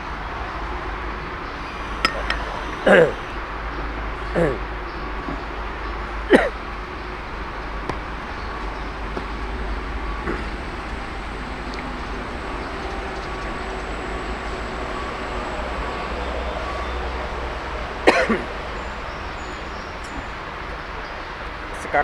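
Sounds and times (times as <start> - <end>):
vehicle running rumble: 1.5 - 19.4
faint clicks: 1.6 - 3.5.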